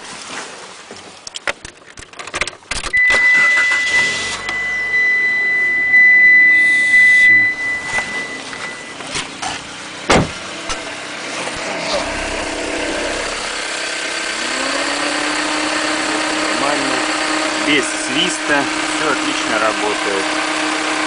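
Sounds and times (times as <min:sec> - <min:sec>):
car engine starting and running: 0:01.5 - 0:21.0
steady high tone: 0:03.0 - 0:09.1, 0:10.5 - 0:19.8
sharp knock: 0:10.1 - 0:10.4.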